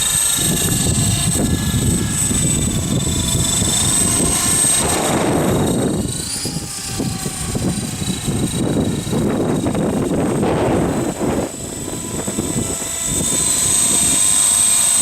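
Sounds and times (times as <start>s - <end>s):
rc helicopter rotor whine: 0.0s - 15.0s
wind buffeting microphone: 0.0s - 15.0s.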